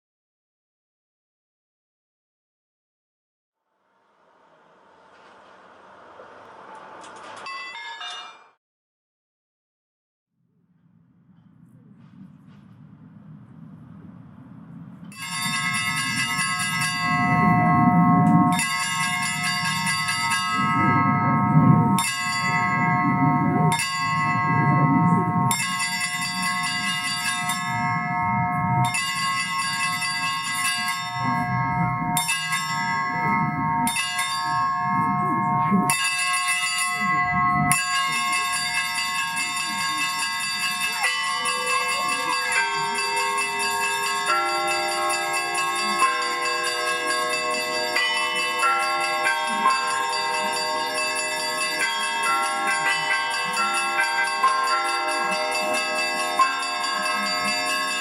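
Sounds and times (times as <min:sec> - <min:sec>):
church bells rung by hand: 0:15.1 - 0:58.0.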